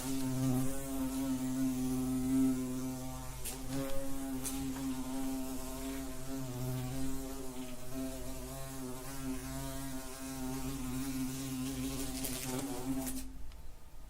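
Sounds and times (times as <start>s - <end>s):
wasp buzzing in flight: 0.0s - 13.3s.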